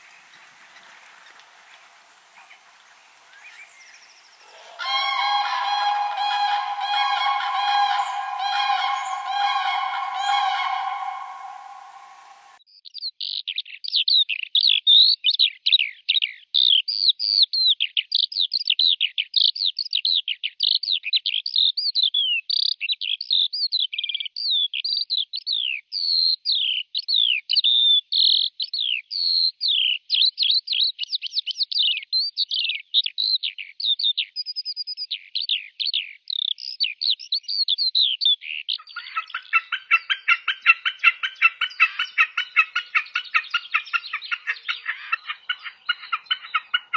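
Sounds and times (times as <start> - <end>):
birds chirping squeaky notes: 3.3 - 12.6
buzzy bird chatter: 3.4 - 12.6.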